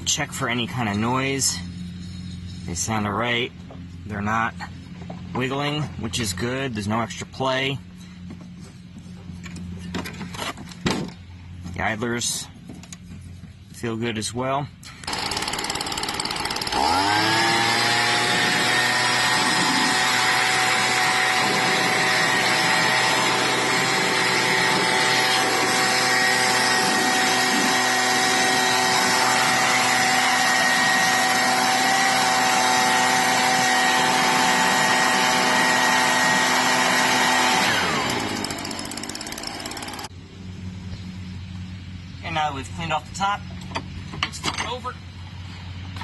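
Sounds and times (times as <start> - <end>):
electric motor whining: 15.0 - 40.1.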